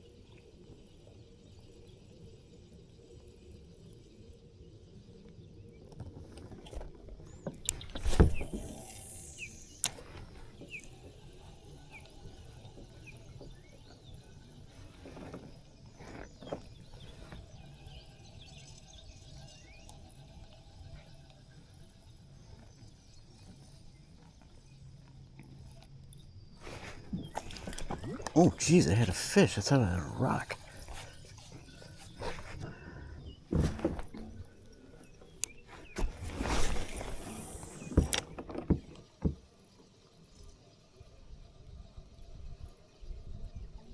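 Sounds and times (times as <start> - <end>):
fishing cast whoosh: 35.8 - 38.0.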